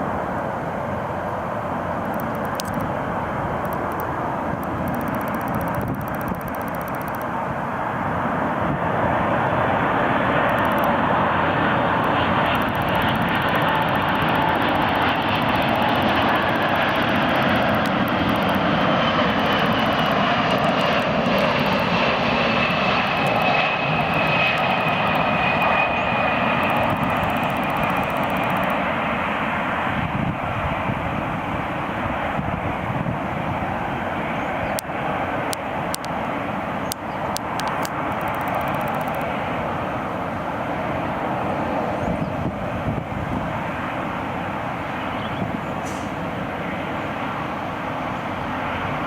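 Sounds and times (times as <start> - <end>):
jet engines roaring: 0.0 - 49.0
sharp clicks: 2.0 - 2.9, 3.6 - 7.3, 10.4 - 11.0, 12.0 - 18.6, 26.6 - 28.8, 35.5 - 36.1, 36.9 - 39.3.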